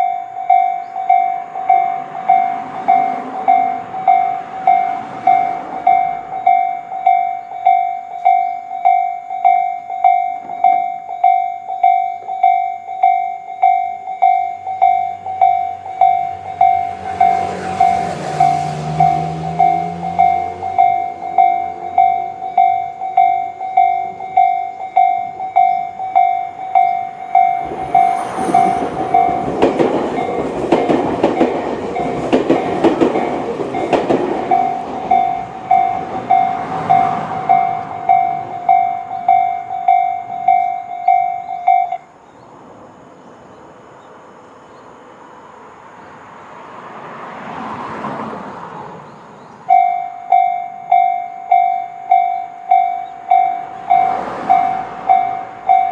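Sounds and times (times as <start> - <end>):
level-crossing warning bells: 0.0 - 42.2, 49.4 - 55.9
electric train passing: 0.0 - 55.9
train wheel clacks: 26.7 - 40.6.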